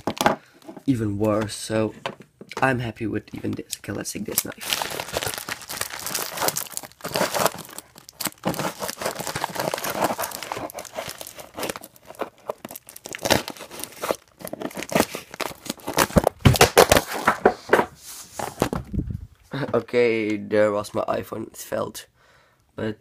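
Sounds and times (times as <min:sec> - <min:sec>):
packaging crinkling and rustling: 0:00.0 - 0:00.8, 0:04.2 - 0:17.8
tape ripping: 0:04.3 - 0:17.4
cardboard parcel being cut: 0:04.7 - 0:17.2.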